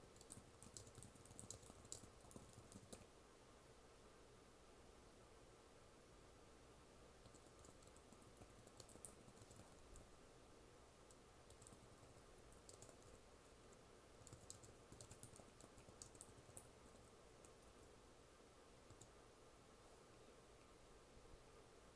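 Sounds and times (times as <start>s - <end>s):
keyboard typing: 0.0s - 3.1s, 7.2s - 10.1s, 11.1s - 17.9s, 18.9s - 19.1s.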